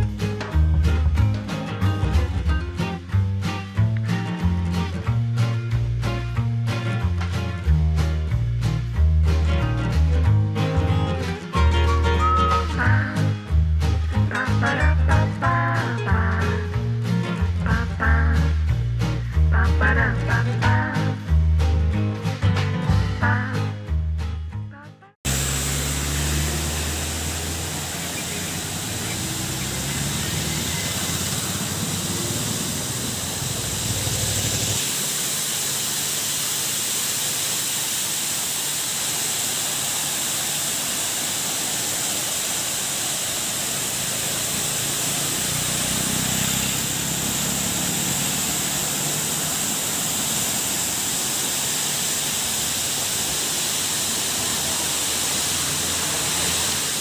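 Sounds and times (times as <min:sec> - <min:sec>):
water pouring down a waterfall: 0:25.3 - 0:57.0.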